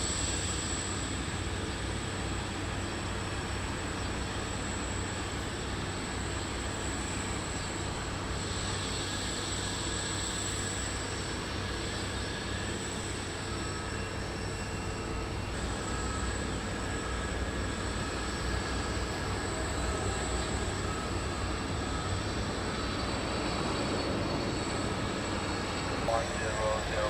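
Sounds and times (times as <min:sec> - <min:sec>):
jet engines roaring: 0:05.2 - 0:27.0
high whine: 0:23.1 - 0:27.0.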